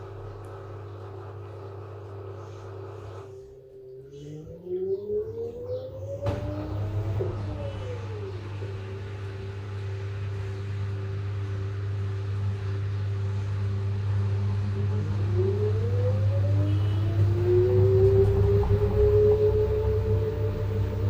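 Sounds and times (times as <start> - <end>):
low hum: 0.0 - 21.0
washing machine motor whine: 0.0 - 21.0.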